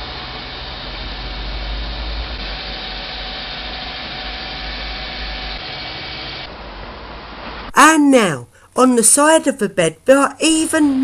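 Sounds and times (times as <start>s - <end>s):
hospital bed motor running: 0.0s - 6.5s.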